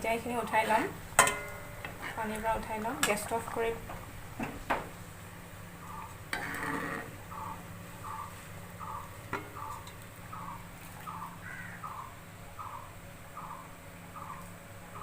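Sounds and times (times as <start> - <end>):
utensil clinking against pot: 1.2 - 2.0.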